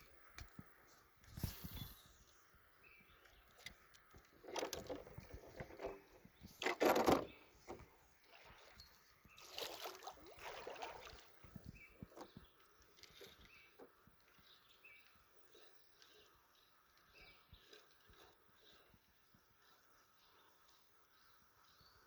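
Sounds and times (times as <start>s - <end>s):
water sloshing around kayak: 2.8s - 20.4s.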